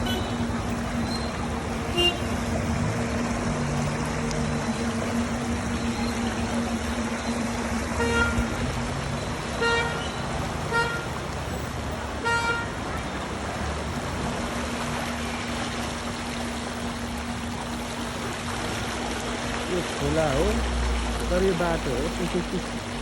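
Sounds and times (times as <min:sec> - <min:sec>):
vehicle horns tooting: 0:00.0 - 0:01.3, 0:01.9 - 0:02.4, 0:07.9 - 0:11.2, 0:12.2 - 0:13.2
engine running: 0:00.0 - 0:23.0.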